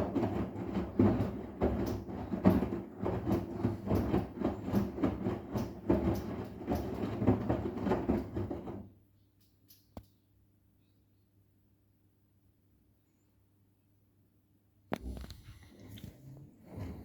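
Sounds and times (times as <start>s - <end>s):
wet laundry sloshing and thumping: 0.0s - 8.9s
washing machine motor hum: 0.0s - 9.0s.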